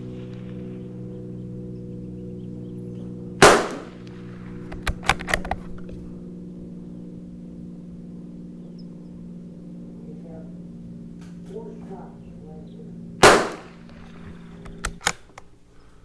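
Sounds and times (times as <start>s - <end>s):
steady low hum: 0.0s - 16.0s
rifle shot: 3.4s - 5.8s, 13.2s - 15.4s
metallic clicks of rifle bolt: 3.6s - 6.0s, 13.4s - 15.5s.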